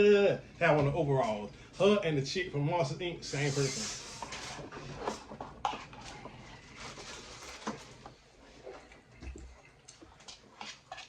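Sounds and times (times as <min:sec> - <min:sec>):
person chewing: 0:08.5 - 0:11.0.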